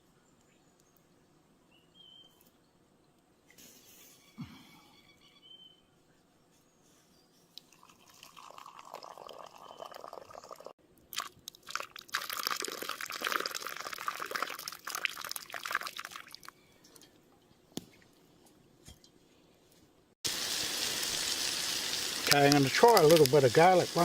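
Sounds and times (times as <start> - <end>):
mushrooms sizzling in a pan: 20.3 - 24.0.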